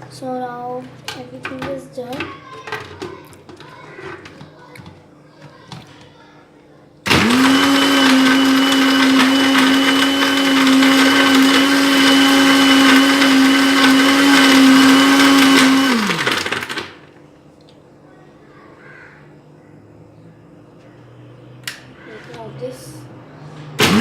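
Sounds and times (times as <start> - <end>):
mixer grinder whining: 7.0 - 17.2, 20.8 - 24.0.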